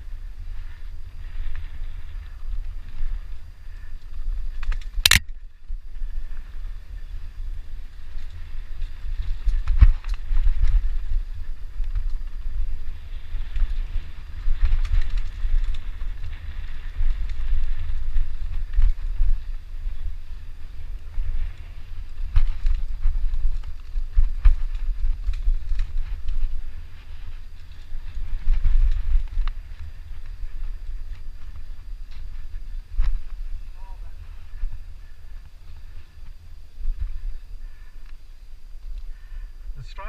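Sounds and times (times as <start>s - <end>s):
wind buffeting on camera: 0.0s - 40.0s
sharp crack: 4.7s - 5.4s
bike rattles and knocks: 7.6s - 33.6s.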